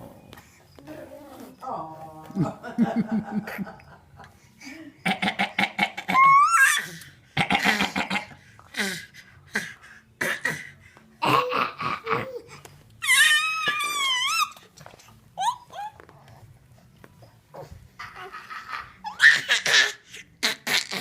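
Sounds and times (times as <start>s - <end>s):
dog whining: 15.4s - 16.4s.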